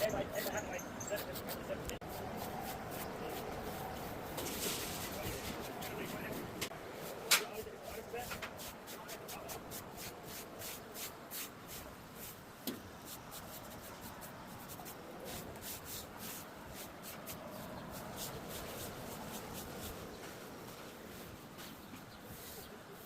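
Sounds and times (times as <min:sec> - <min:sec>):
scraping and rubbing strokes: 0:00.0 - 0:12.4, 0:13.0 - 0:23.0.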